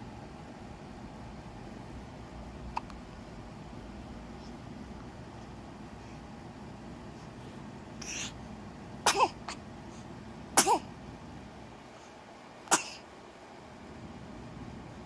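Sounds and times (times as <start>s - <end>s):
baby hiccuping: 9.0s - 9.5s, 10.6s - 10.9s.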